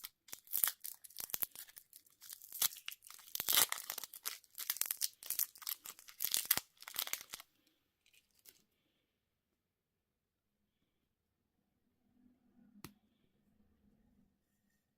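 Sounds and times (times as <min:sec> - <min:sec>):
wrapper tearing and crinkling: 0:00.0 - 0:07.5, 0:08.1 - 0:08.6.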